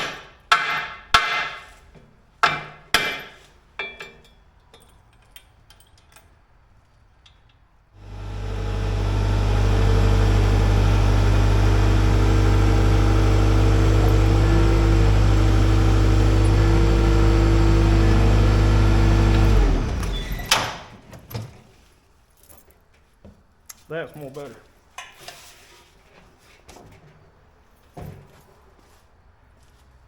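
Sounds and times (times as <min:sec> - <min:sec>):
motor-driven machine running: 0:08.0 - 0:20.4.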